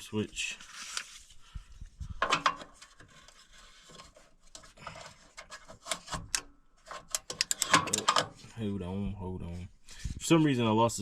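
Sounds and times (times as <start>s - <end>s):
switch clicks and scrapes: 2.2s - 8.4s
scrape and rub: 2.9s - 6.2s.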